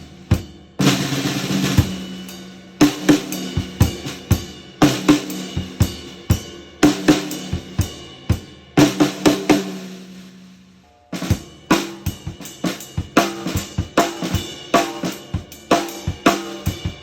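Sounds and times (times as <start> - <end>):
snare drum: 11.2 - 17.0.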